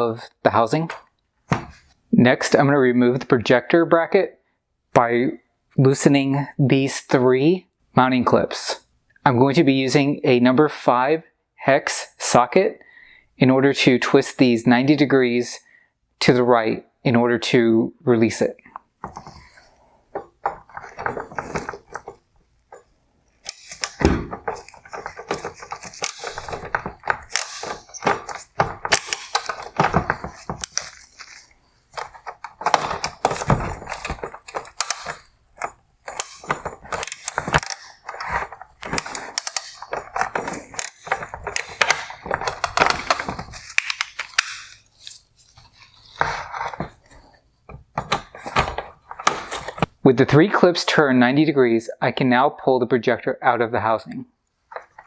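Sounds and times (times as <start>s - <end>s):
plastic clicking and clatter: 19.0s - 49.9s.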